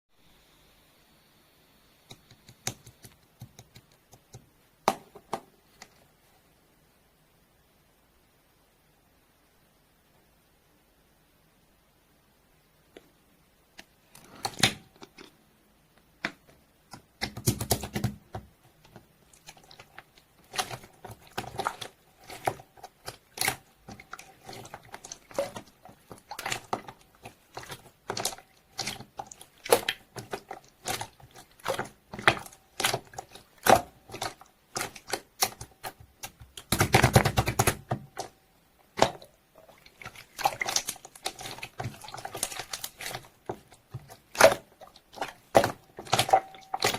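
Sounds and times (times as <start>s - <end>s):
slime squished by hand: 19.3s - 38.3s, 38.9s - 46.9s.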